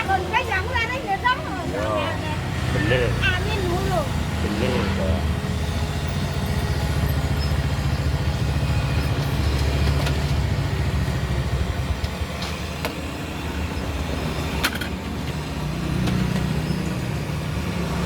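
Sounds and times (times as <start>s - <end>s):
engine running at low speed: 0.0s - 18.0s.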